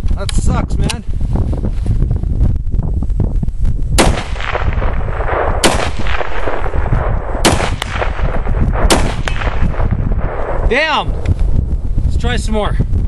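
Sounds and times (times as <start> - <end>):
wind buffeting microphone: 0.0 - 13.0
rifle shots with echo: 4.0 - 11.1.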